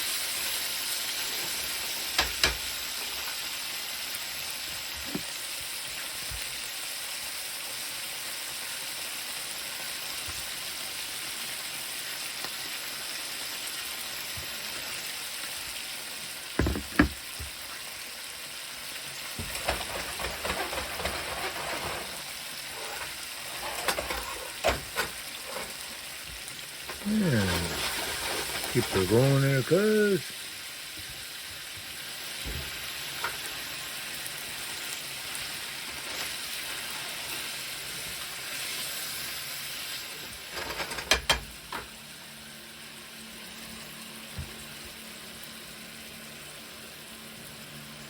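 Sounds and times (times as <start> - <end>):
food sizzling: 0.0 - 48.0
utensils clattering: 19.6 - 25.8, 26.9 - 29.3.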